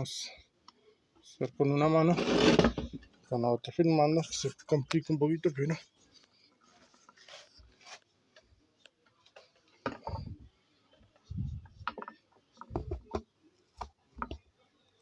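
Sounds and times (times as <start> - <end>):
handling thumps: 11.5 - 14.5.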